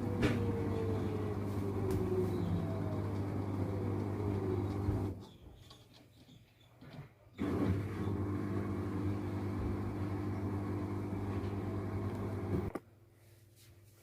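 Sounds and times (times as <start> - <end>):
washing machine motor hum: 0.0 - 5.3, 7.4 - 12.8.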